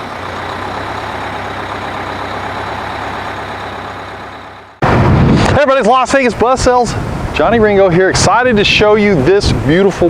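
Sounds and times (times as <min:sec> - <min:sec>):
bus engine humming: 0:00.0 - 0:05.0.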